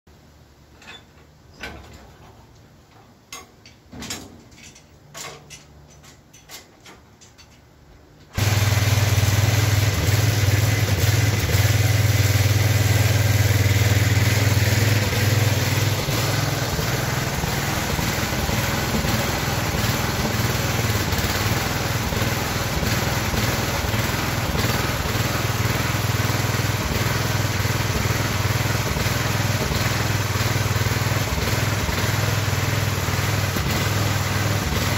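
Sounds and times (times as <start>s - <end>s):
engine running with low hum: 8.2s - 34.9s.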